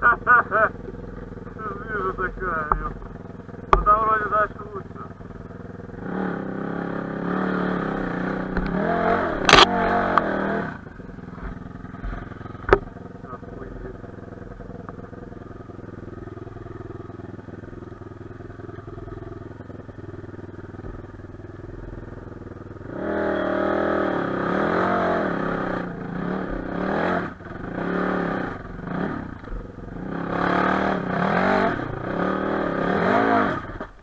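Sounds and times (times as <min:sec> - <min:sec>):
motorcycle engine revving: 0:00.0 - 0:34.0
sharp click: 0:09.4 - 0:10.3.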